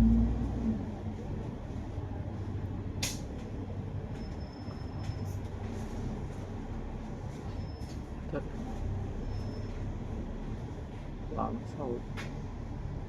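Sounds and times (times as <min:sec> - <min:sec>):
bus engine and road noise: 0:00.0 - 0:13.0
sharp click: 0:03.0 - 0:03.3.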